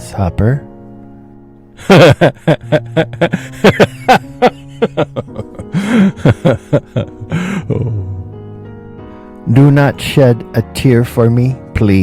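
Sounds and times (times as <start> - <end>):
soft background music: 0.0 - 12.0
person sobbing and wailing: 1.8 - 8.2.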